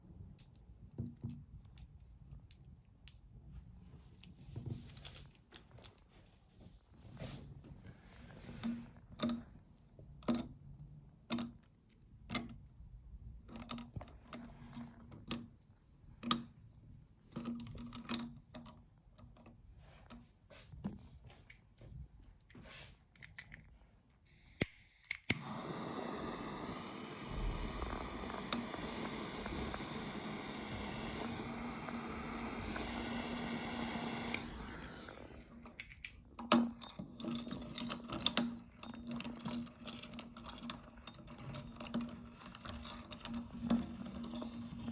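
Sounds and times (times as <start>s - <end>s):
items being handled clicking: 21.4s - 44.9s
meat grinder humming: 25.3s - 35.6s.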